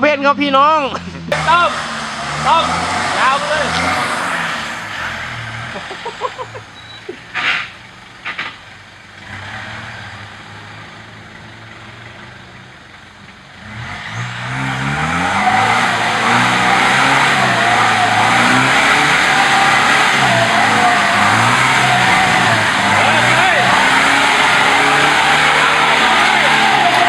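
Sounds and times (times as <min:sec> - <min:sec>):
engine revving under load: 0:00.9 - 0:27.0
loud rushing noise: 0:01.3 - 0:06.1, 0:14.7 - 0:27.0.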